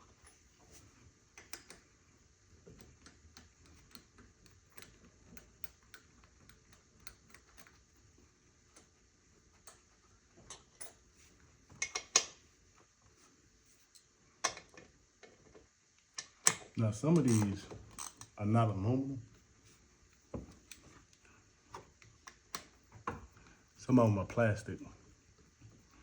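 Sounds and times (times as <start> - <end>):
light clicks of tools: 1.4 - 1.8.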